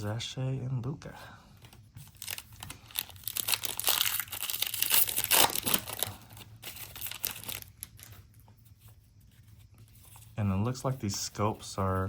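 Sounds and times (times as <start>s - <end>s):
wrapper crinkling and tearing: 2.0s - 8.1s.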